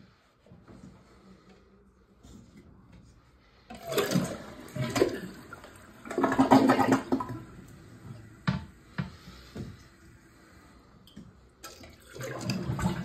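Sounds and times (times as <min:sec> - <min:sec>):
toilet flushing: 0:03.7 - 0:13.0.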